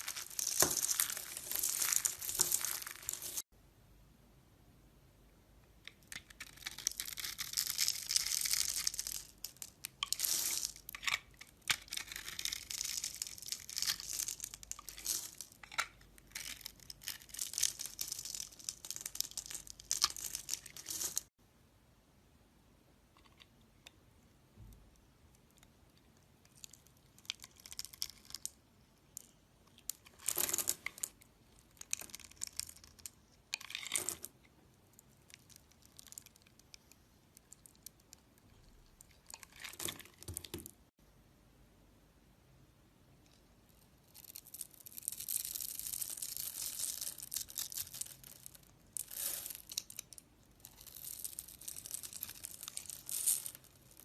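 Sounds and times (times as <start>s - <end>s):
knife carving soap: 5.9s - 9.1s, 9.8s - 13.9s.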